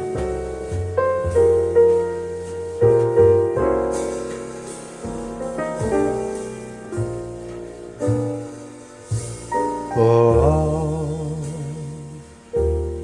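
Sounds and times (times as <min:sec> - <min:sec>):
slow piano music over loudspeakers: 0:00.0 - 0:13.0.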